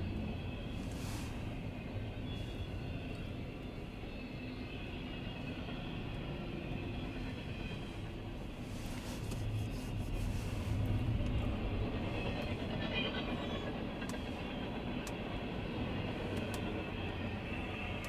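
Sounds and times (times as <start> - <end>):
train cars rumbling on rails: 0.0 - 18.0.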